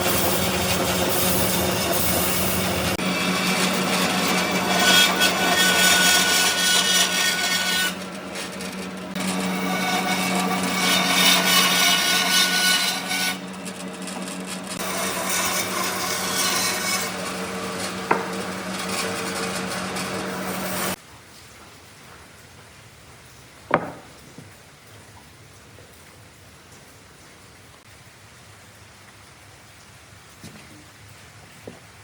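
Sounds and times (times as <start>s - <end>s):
power tool cutting wood: 0.0s - 21.0s.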